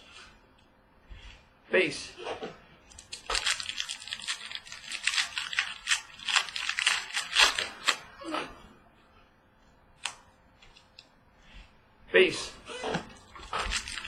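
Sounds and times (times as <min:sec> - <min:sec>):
wrapper crinkling and tearing: 0:02.9 - 0:08.1, 0:13.2 - 0:14.0.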